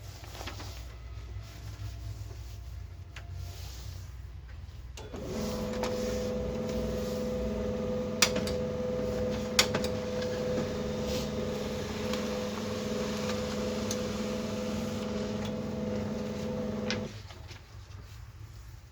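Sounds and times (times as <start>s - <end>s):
laser printer motor hum: 5.2s - 17.1s
printer clicks: 7.6s - 17.2s.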